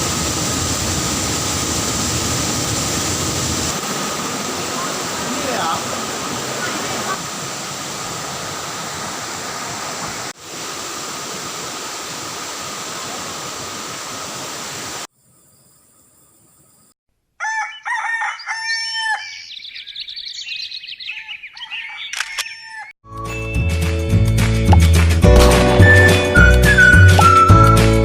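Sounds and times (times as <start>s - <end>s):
waterfall rushing: 0.0s - 15.1s
bird crowing calls: 17.4s - 23.0s.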